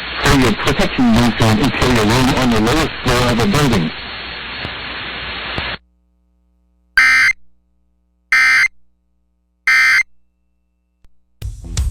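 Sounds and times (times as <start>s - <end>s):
radio hiss: 0.0s - 5.8s
digital data tone squawks: 7.0s - 7.4s, 8.3s - 8.7s, 9.7s - 10.1s.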